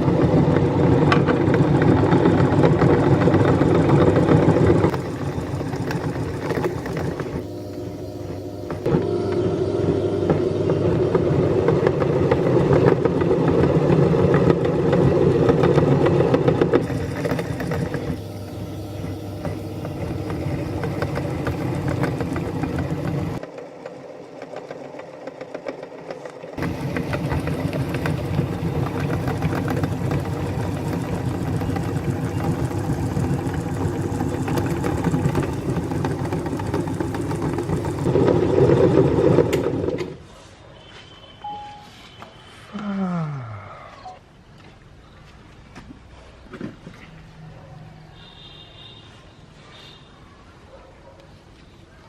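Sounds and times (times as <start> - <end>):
electric meat grinder running: 0.0 - 40.1.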